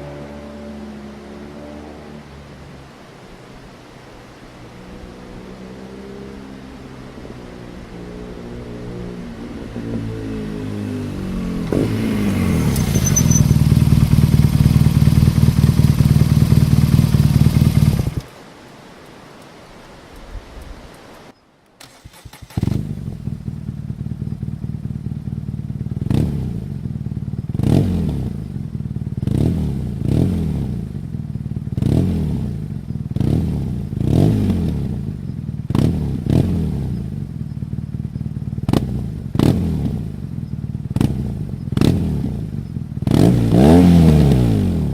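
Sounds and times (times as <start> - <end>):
motorcycle engine revving: 0.0 - 3.3, 4.8 - 18.3, 21.8 - 44.9
motorcycle engine running: 4.9 - 18.3, 22.1 - 44.9
exhaust cracks: 7.2 - 18.3, 21.8 - 32.1.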